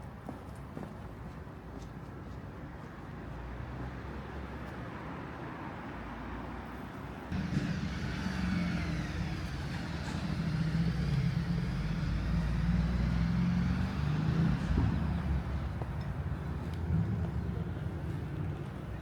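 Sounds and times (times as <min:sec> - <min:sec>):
street traffic: 0:00.0 - 0:19.0
car engine running: 0:07.3 - 0:15.9.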